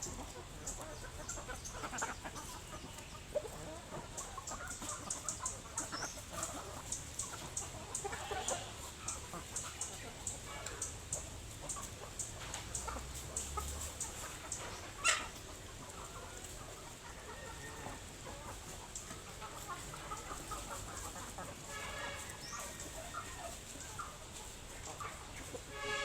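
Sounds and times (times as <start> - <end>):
chickens clucking: 0.0 - 26.0.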